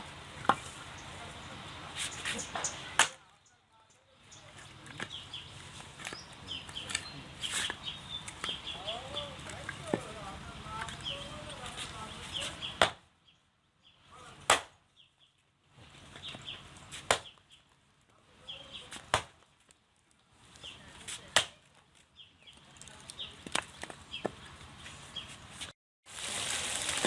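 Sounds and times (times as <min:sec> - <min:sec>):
knife chopping strikes: 0:02.0 - 0:03.2, 0:12.8 - 0:13.0, 0:14.4 - 0:14.8, 0:16.9 - 0:17.3, 0:18.9 - 0:19.4, 0:21.1 - 0:21.6.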